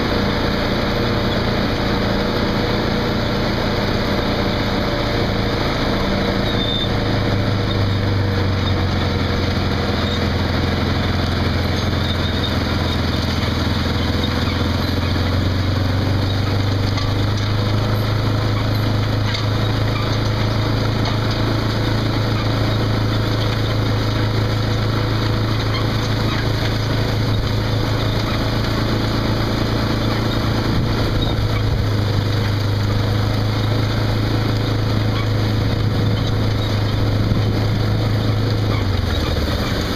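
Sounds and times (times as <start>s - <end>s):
tractor diesel engine drone: 0.0s - 39.9s
turbocharger whistle: 6.4s - 7.0s.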